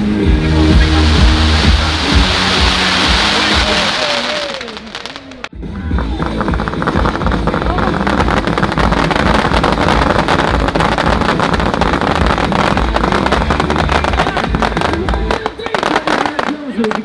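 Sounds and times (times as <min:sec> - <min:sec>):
low rumble: 0:00.0 - 0:04.2
fireworks bangs and crackles: 0:00.3 - 0:17.0.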